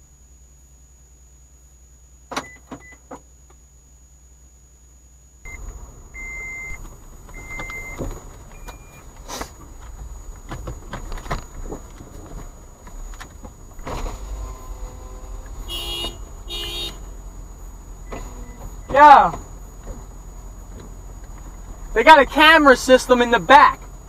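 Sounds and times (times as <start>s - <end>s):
car engine rumble: 0.0s - 24.0s.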